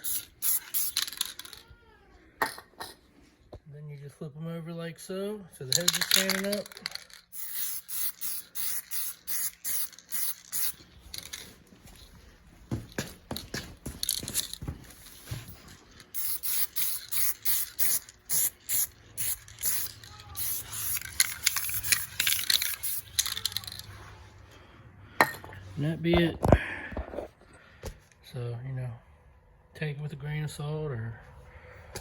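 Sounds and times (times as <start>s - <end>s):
spray can hissing: 0.0s - 1.4s, 7.3s - 11.4s, 16.1s - 23.8s.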